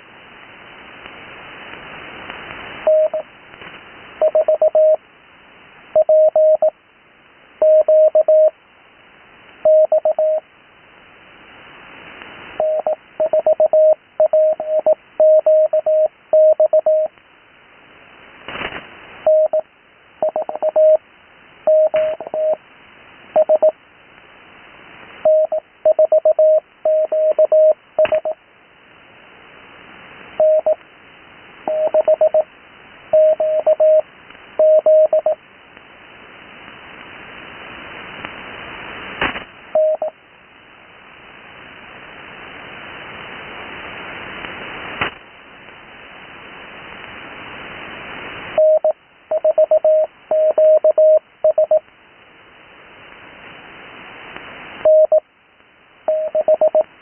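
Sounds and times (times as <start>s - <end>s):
radio band hiss: 0.0s - 6.0s, 6.6s - 50.3s
static crackles: 0.0s - 57.0s
morse code tone: 2.9s - 3.2s, 4.2s - 5.0s, 6.0s - 6.7s, 7.6s - 8.5s, 9.7s - 10.4s, 12.6s - 17.1s, 19.3s - 19.6s, 20.2s - 21.0s, 21.7s - 22.6s, 23.4s - 23.7s, 25.3s - 28.4s, 30.4s - 30.8s, 31.7s - 32.4s, 33.2s - 34.0s, 34.6s - 35.4s, 39.8s - 40.1s, 48.6s - 51.8s, 54.9s - 55.2s, 56.1s - 56.8s.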